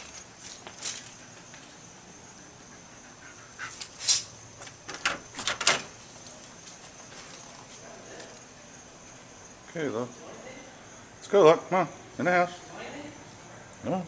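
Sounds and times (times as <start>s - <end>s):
dog making sharp sounds: 2.5s - 4.4s.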